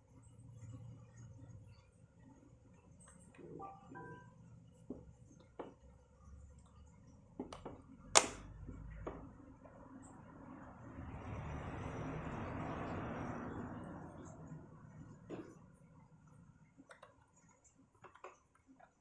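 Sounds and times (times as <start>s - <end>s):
sharp snap: 8.2s - 8.5s.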